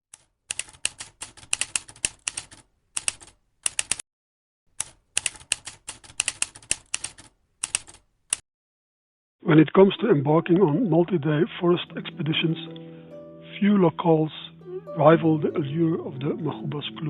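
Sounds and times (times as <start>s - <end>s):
keyboard typing: 0.2s - 4.0s, 4.8s - 8.4s.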